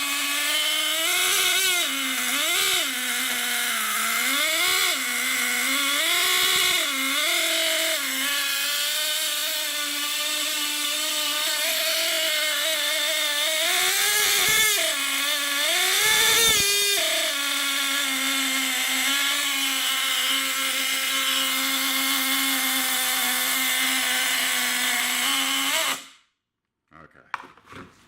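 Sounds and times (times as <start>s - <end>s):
nitro engine high revving whine: 0.0s - 19.4s.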